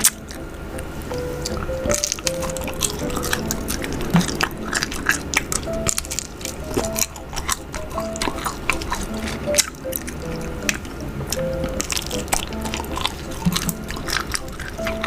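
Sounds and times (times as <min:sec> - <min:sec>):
background music with held notes: 0:00.0 - 0:15.0.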